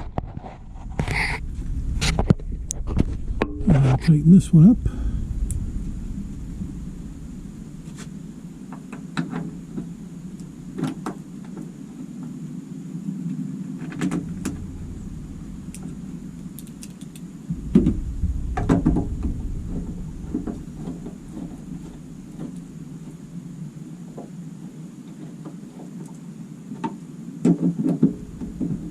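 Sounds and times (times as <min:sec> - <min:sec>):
low rumble: 0:00.0 - 0:11.9, 0:13.0 - 0:25.1, 0:27.9 - 0:28.9
steady low hum: 0:00.0 - 0:25.2, 0:27.9 - 0:28.9.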